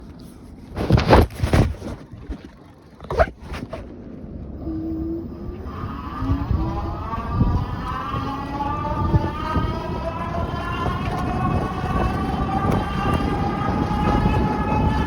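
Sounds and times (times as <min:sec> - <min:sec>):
phone handling bumps and rustles: 0:00.8 - 0:02.0
electric bike motor whine: 0:04.5 - 0:15.0.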